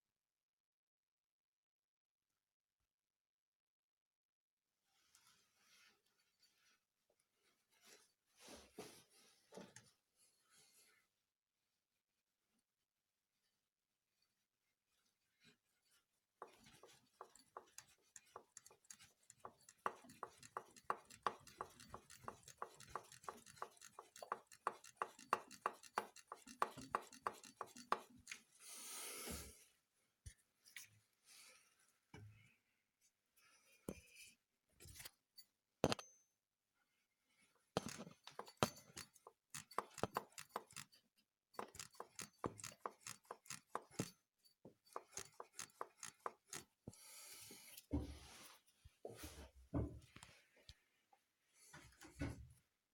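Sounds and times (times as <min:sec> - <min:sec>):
timing belt tensioner clicking: 0:17.2 - 0:28.4.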